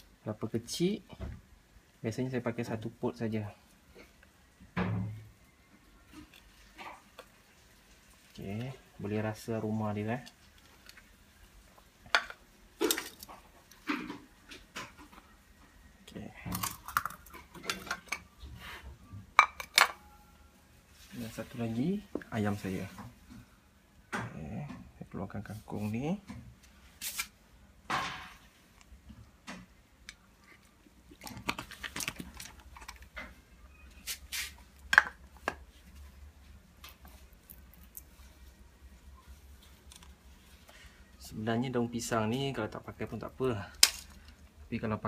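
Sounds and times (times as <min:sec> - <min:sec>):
utensils and containers clinking: 0:16.5 - 0:18.3.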